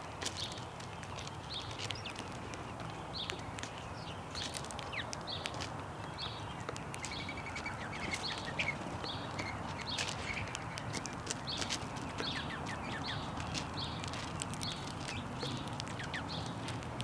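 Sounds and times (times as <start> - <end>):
beaks pecking at seed: 0.0 - 17.0
sparrows chirping: 0.0 - 17.0.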